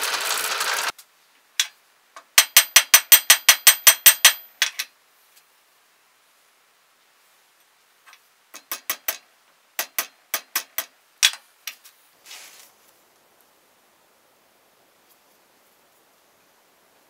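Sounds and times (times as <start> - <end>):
soft rustle: 11.6 - 13.9, 14.6 - 17.0.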